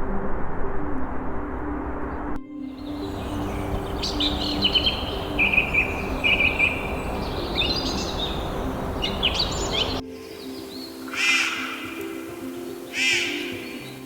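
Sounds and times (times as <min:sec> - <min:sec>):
songbirds chirping and trilling: 0:02.7 - 0:14.0
steady background hiss: 0:02.8 - 0:13.9.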